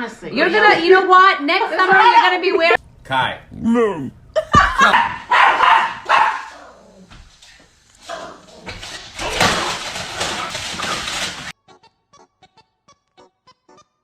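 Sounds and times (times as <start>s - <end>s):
dog barking: 4.8s - 6.8s.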